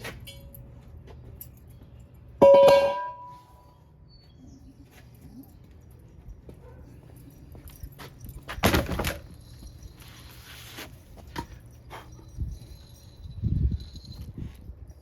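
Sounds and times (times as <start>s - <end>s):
loud metallic clang: 2.4s - 3.4s.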